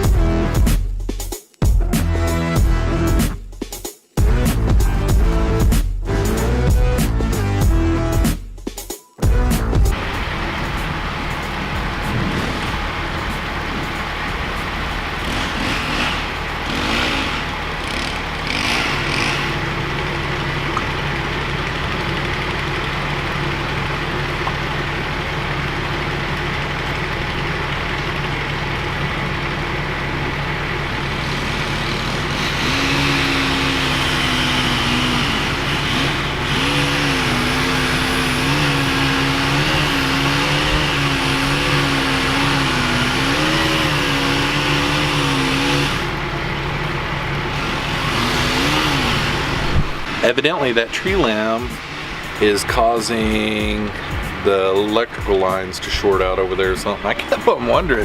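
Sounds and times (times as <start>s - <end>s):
vehicle engine running: 0.0s - 0.8s, 1.6s - 3.4s, 4.2s - 8.3s, 9.2s - 58.0s
wind: 9.9s - 58.0s
rain: 10.0s - 16.0s.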